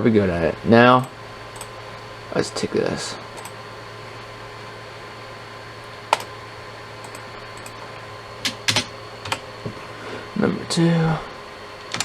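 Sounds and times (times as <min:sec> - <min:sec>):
fan humming with faint whine: 0:00.0 - 0:12.0
sharp clicks: 0:01.0 - 0:02.1, 0:03.4 - 0:03.6, 0:06.1 - 0:06.3, 0:07.0 - 0:07.8, 0:08.4 - 0:09.4.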